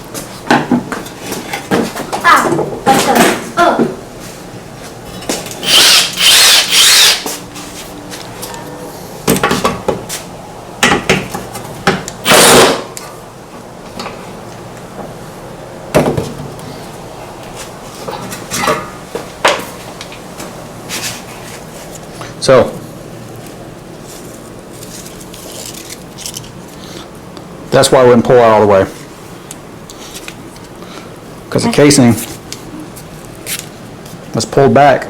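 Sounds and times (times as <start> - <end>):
tool noise and clattering: 5.0 - 10.1, 10.8 - 13.0, 18.0 - 19.8.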